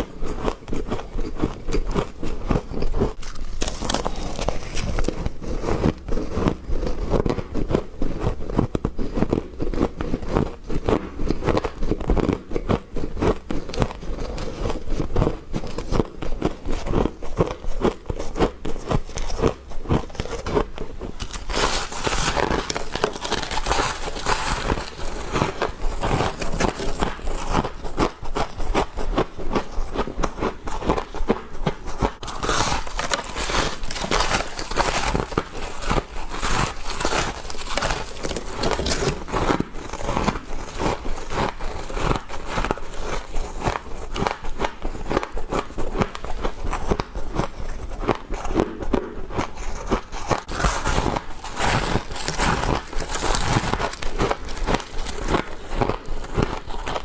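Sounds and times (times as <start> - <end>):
crunching bites into frost: 3.2 - 6.3, 18.9 - 29.6, 30.4 - 57.0.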